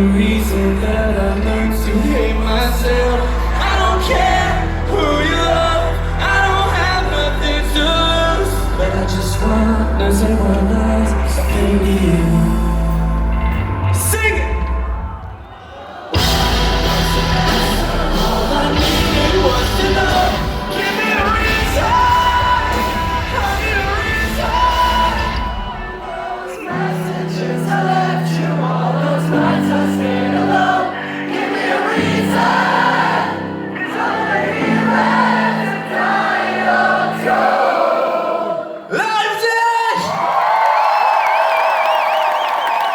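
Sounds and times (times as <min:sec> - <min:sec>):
voices singing: 0:00.0 - 0:13.8, 0:14.6 - 0:39.0
drums: 0:11.4 - 0:27.0
rock band playing live: 0:16.1 - 0:37.1.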